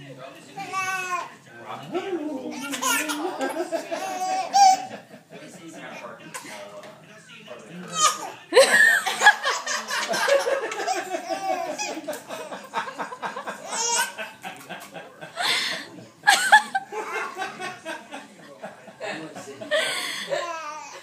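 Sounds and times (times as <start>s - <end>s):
baby laughing: 2.4s - 5.1s, 7.9s - 12.5s, 13.4s - 15.7s, 16.3s - 17.8s, 20.4s - 21.0s.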